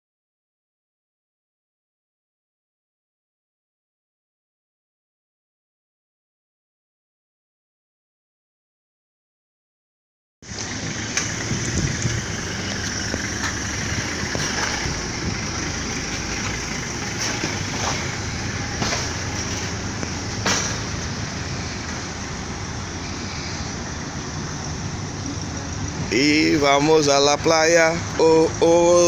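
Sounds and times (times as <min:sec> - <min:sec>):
bus engine running: 0:10.4 - 0:29.0
road traffic: 0:10.4 - 0:29.0.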